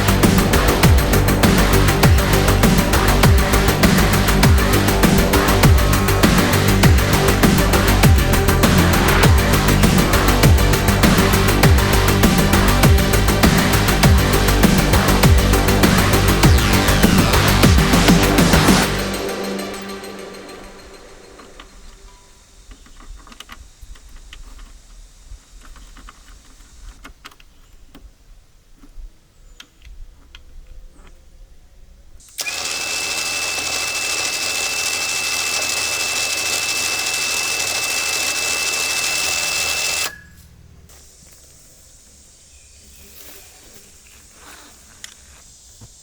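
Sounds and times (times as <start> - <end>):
power tool high whine: 32.3 - 40.2.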